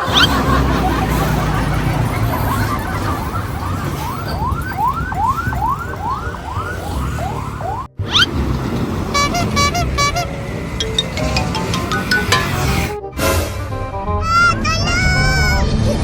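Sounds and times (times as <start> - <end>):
electronic siren yelping: 0.0 - 8.3.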